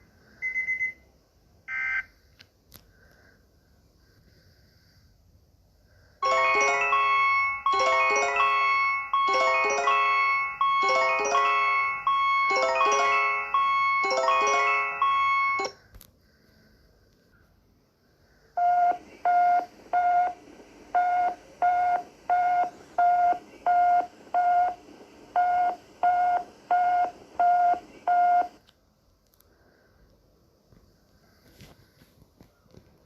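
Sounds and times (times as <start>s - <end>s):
multi-note electronic chime: 6.2s - 15.8s
electronic alert beeps: 7.0s - 15.8s.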